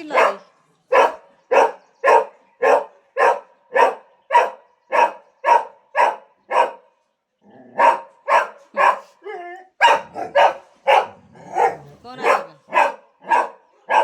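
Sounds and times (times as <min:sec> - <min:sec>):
dog barking: 0:00.0 - 0:06.9, 0:07.7 - 0:14.0.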